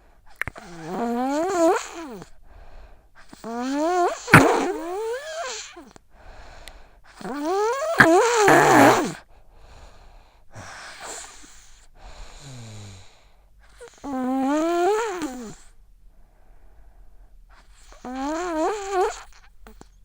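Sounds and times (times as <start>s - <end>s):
child snoring with wheezy breaths: 3.6s - 5.7s, 7.4s - 9.2s, 12.3s - 15.6s, 17.6s - 19.8s.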